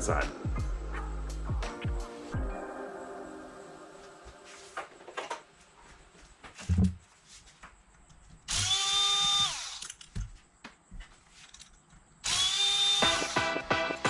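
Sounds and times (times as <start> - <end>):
power drill motor whine: 8.5 - 10.0, 12.2 - 13.5.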